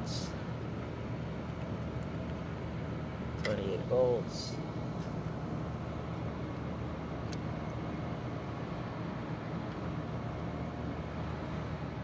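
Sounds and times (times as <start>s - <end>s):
air conditioning unit humming: 0.0s - 12.0s.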